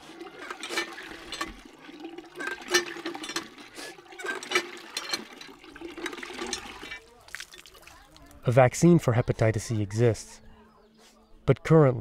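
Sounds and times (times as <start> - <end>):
water splashing and pouring: 0.0 - 8.4.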